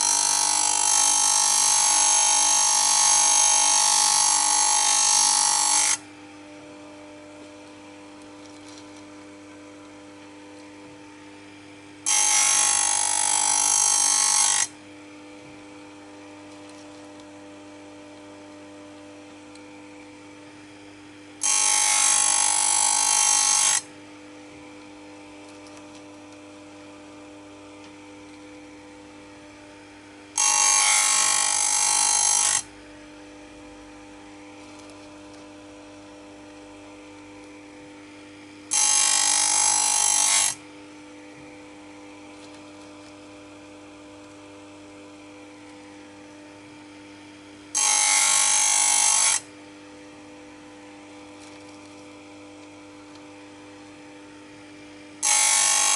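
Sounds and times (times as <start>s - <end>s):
chain grinder motor hum: 0.0s - 6.2s, 6.8s - 10.8s, 11.5s - 23.9s, 24.5s - 28.6s, 30.3s - 55.9s
harsh grinding rasp: 55.2s - 55.9s.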